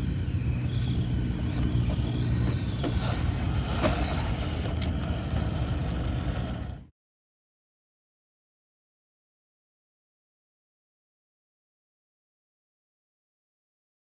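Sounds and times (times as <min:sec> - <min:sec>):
electric motor and gears whining: 0:00.0 - 0:06.9
low rumble: 0:00.0 - 0:06.9
clicks: 0:01.5 - 0:06.7.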